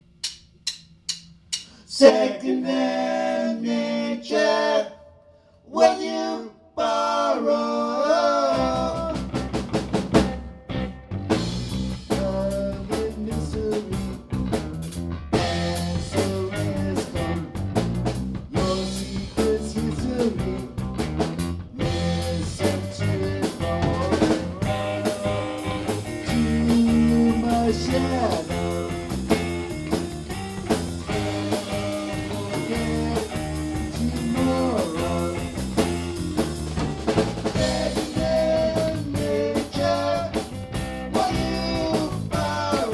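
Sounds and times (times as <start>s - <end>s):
steady drum beat: 0.2s - 1.8s, 8.6s - 42.9s
band playing: 8.6s - 42.9s.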